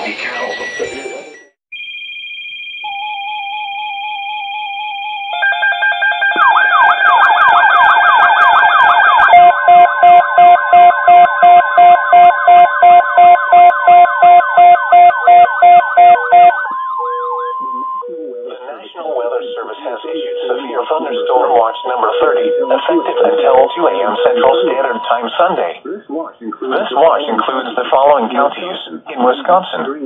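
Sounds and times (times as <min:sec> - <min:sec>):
sweeping alarm: 0:00.0 - 0:25.4
steady high alert tones: 0:00.0 - 0:25.7
warbling alarm tone: 0:01.8 - 0:25.4
rapid loud beeping: 0:05.4 - 0:25.6.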